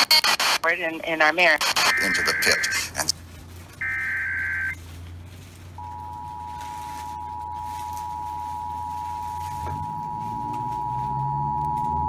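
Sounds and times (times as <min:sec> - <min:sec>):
radio hiss and low hum: 0:00.0 - 0:10.9
warbling data burst: 0:01.6 - 0:03.1.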